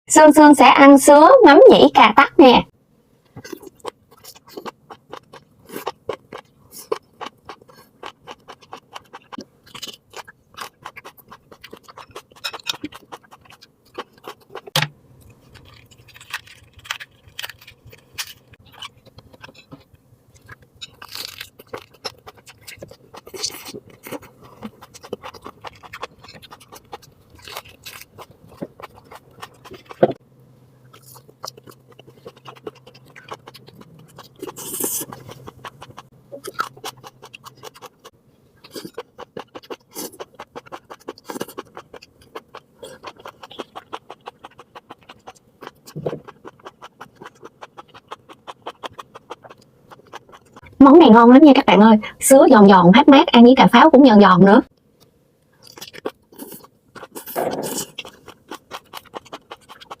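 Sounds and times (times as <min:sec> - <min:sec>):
close-miked wet crunchy chewing: 0:03.2 - 0:50.8, 0:54.7 - 1:00.0.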